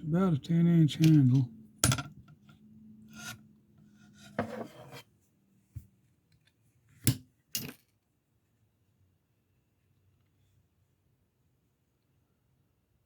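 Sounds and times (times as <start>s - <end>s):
knife handling rubbing and scraping: 4.0s - 5.1s.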